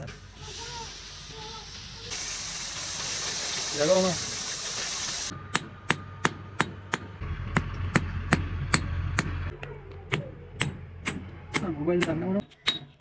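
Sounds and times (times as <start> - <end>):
hammer striking metal on anvil: 10.1 - 13.0.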